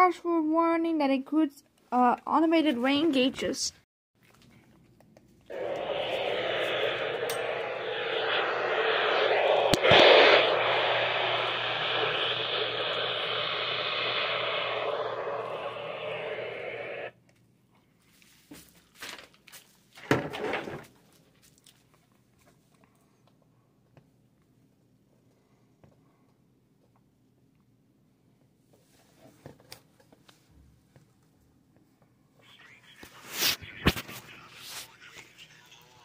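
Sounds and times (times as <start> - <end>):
low hum: 5.5 - 17.1
radio static hiss: 5.5 - 17.2, 32.4 - 36.0.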